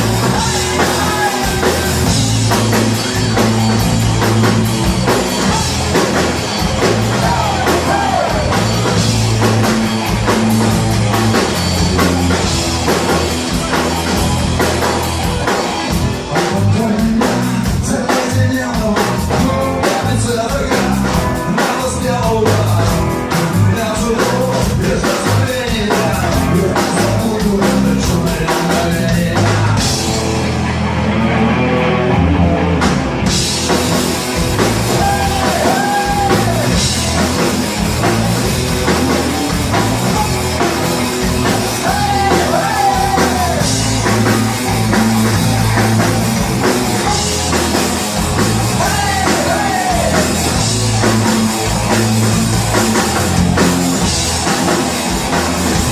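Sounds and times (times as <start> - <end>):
rock band playing live: 0.0 - 55.9
person singing: 0.1 - 3.8, 6.9 - 9.0, 34.9 - 36.8, 41.4 - 45.3, 48.6 - 51.3.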